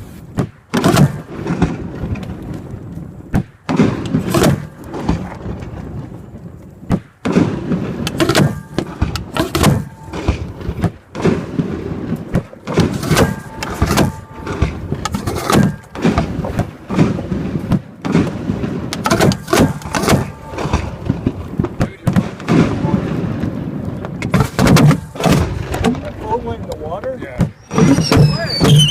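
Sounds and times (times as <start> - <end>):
firework launch thumps: 3.3 - 6.0, 6.8 - 28.9
firework shell bursts: 12.2 - 22.8, 27.4 - 28.9.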